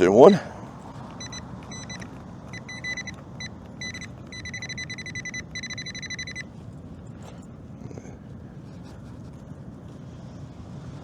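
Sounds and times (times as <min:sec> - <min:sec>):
metal detector beeping: 0:01.1 - 0:06.5.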